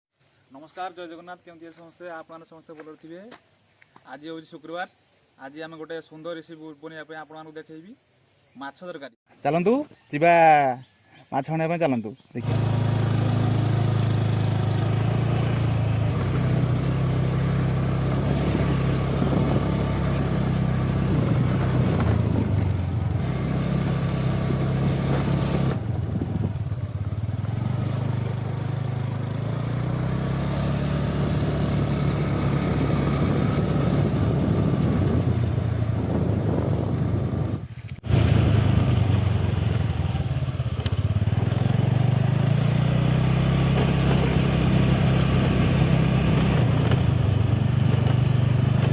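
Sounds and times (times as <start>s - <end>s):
small vehicle engine running: 12.4s - 48.9s.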